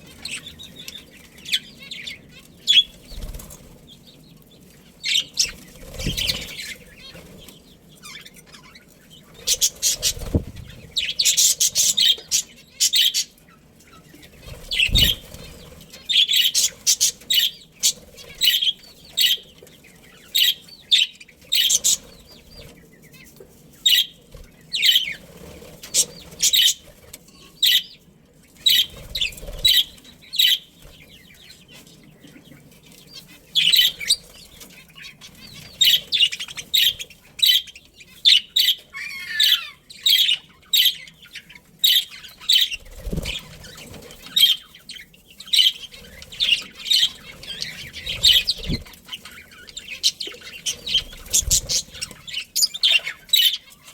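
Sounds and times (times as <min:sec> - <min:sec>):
budgerigars chirping: 0:00.0 - 0:53.9.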